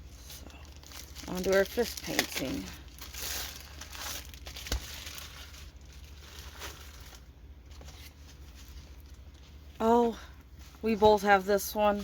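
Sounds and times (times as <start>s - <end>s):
plastic packaging crinkling: 0.0s - 9.6s.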